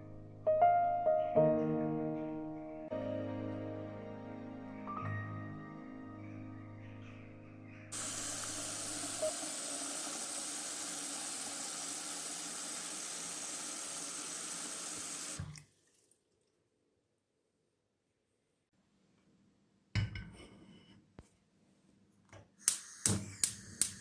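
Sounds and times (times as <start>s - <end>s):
piano music: 0.0s - 9.6s
tap water running into sink: 8.0s - 16.0s.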